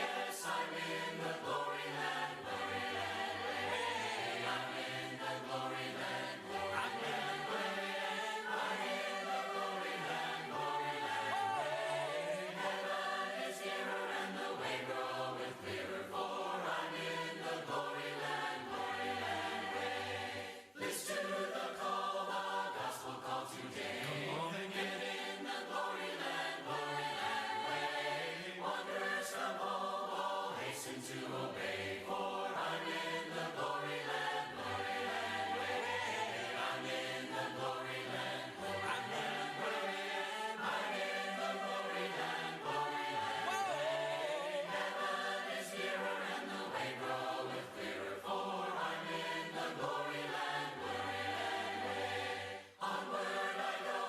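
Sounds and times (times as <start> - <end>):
congregation singing a hymn: 0.0 - 54.0.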